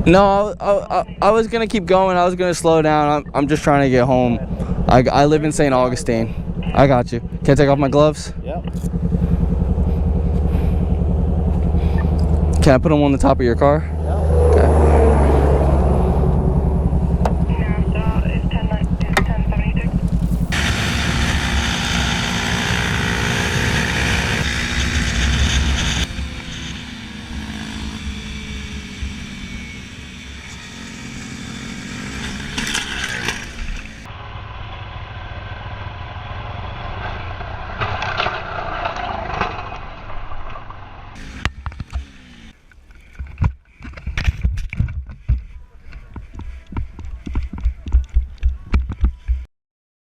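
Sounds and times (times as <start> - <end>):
motorcycle running: 0.0 - 49.5.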